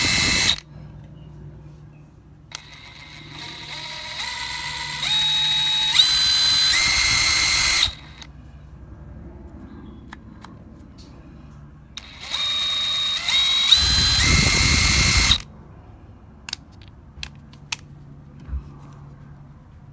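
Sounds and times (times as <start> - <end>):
impact wrench motor whine: 0.0 - 0.6, 2.5 - 8.3, 12.0 - 15.4.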